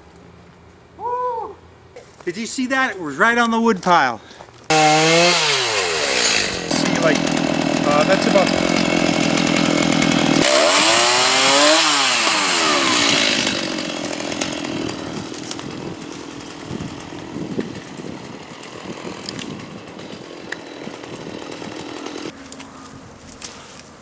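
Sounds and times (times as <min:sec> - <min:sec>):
chainsaw revving: 0:04.7 - 0:22.4.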